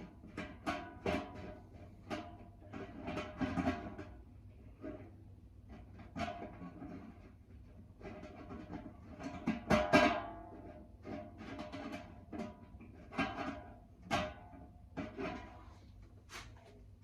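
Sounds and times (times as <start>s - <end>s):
tools knocking on metal drum: 0.0s - 4.3s, 8.0s - 15.6s.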